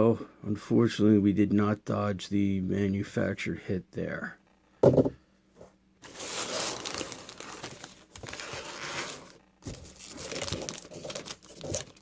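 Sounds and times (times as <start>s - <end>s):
wrapper crinkling: 6.0s - 12.0s.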